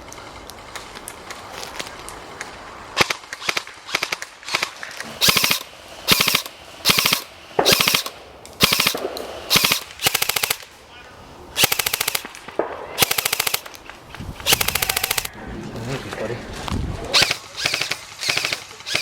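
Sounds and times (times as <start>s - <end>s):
airsoft rifle full-auto bursts: 3.0s - 10.7s, 11.6s - 12.3s, 13.0s - 13.7s, 14.4s - 15.3s, 17.2s - 19.0s.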